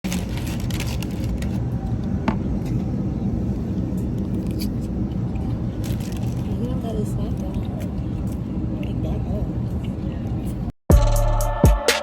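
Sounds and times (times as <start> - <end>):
moving vehicle rumble: 0.0 - 10.7.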